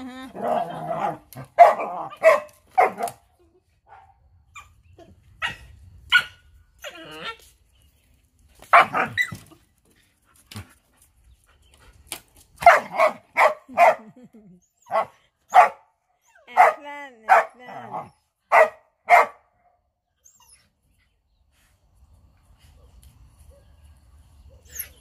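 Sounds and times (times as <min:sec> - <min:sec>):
dogs barking: 0:00.4 - 0:03.2, 0:08.7 - 0:09.2, 0:12.6 - 0:14.0, 0:14.9 - 0:15.8, 0:16.6 - 0:19.5.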